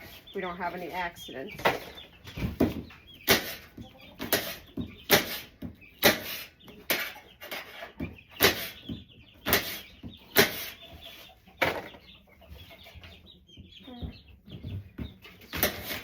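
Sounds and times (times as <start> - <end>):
baby chicks cheeping: 0.0 - 16.0.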